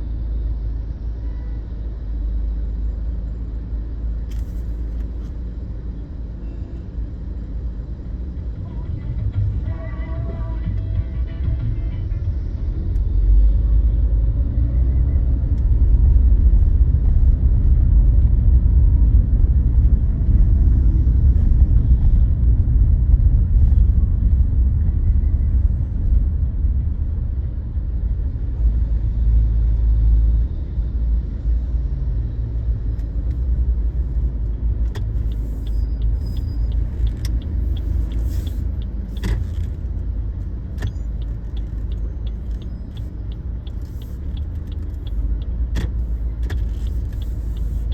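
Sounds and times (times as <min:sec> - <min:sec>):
car road and engine rumble: 0:00.0 - 0:47.9
faint ticks and clicks: 0:40.8 - 0:47.8.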